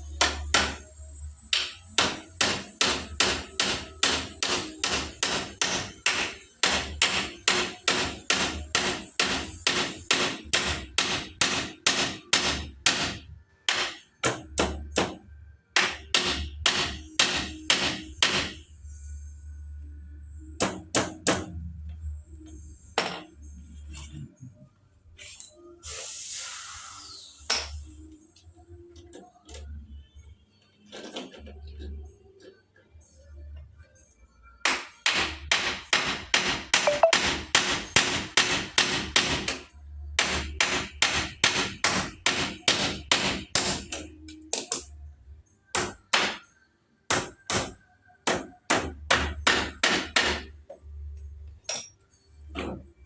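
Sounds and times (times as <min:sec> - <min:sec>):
hammer driving nails: 0:01.6 - 0:15.2, 0:15.8 - 0:18.6, 0:34.7 - 0:39.6, 0:40.2 - 0:44.9.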